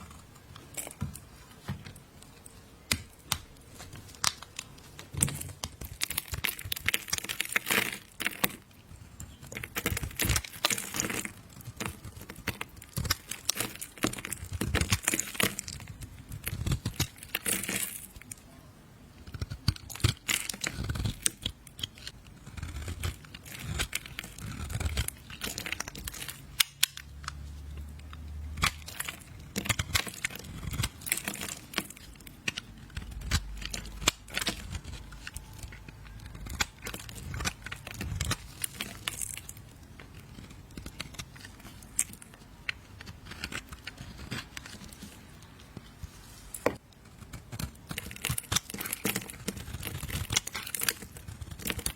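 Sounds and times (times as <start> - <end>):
knife scraping soap: 5.2 - 18.3, 19.2 - 45.8, 46.4 - 51.9.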